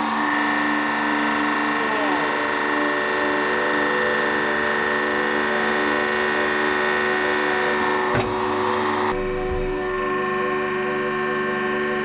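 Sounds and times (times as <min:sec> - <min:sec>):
hydraulic press whining: 0:00.0 - 0:12.0
knock: 0:08.1 - 0:08.4, 0:09.4 - 0:09.9.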